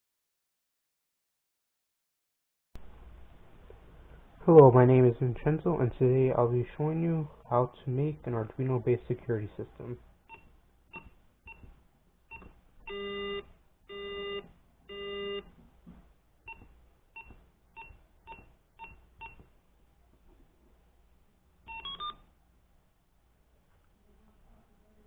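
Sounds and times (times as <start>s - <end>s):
short keypad beeps: 12.3s - 15.5s, 16.5s - 19.4s, 21.7s - 22.2s.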